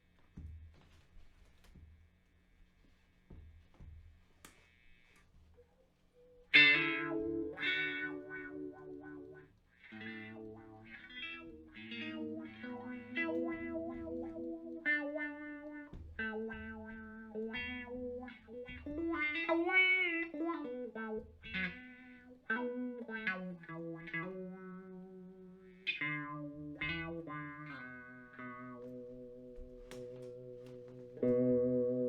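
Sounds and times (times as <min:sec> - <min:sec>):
electric guitar with vibrato: 0:03.3 - 0:32.0.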